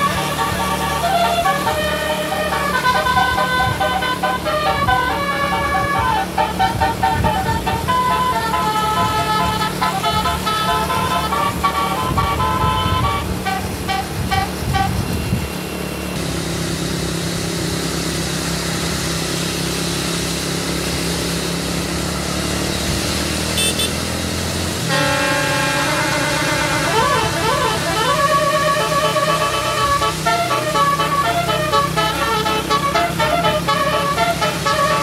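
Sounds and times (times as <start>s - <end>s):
bus horn playing a tune: 0.0s - 15.5s, 23.5s - 24.2s, 24.8s - 35.0s
bus engine and road noise: 0.0s - 35.0s.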